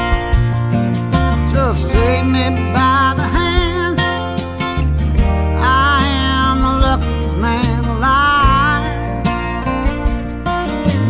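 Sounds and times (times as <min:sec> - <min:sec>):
acoustic guitar: 0:00.0 - 0:11.0
person singing: 0:01.4 - 0:04.4, 0:05.4 - 0:09.3.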